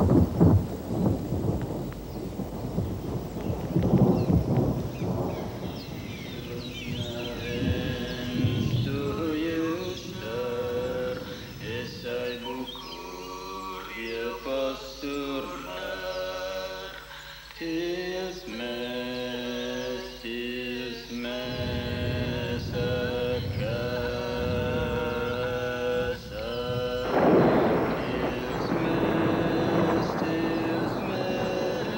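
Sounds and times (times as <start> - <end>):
voices chanting held notes: 3.8 - 31.9
rushing noise: 21.5 - 31.9.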